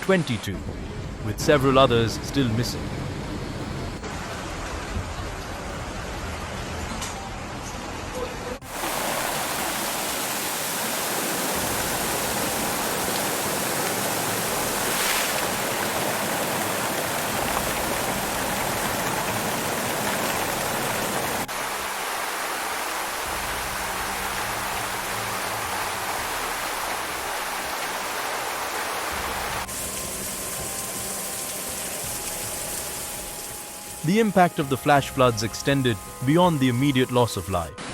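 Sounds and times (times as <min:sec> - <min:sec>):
rushing floodwater: 0:08.6 - 0:37.6.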